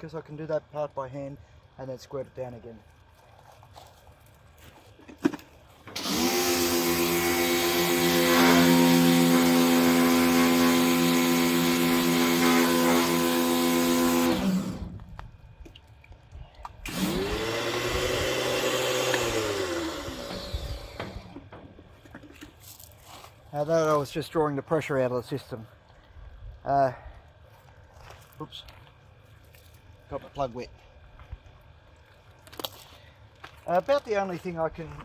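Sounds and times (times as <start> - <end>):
pressure washer spraying water: 6.0 - 14.8.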